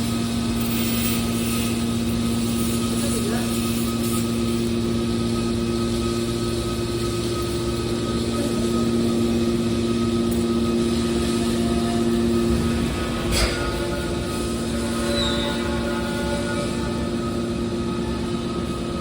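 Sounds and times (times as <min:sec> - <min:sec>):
hydraulic baler motor humming: 0:06.5 - 0:19.0.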